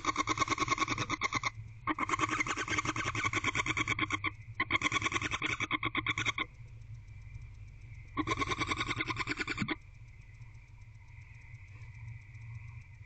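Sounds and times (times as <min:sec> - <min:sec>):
barn owl chittering: 0:00.0 - 0:06.5, 0:08.0 - 0:09.8.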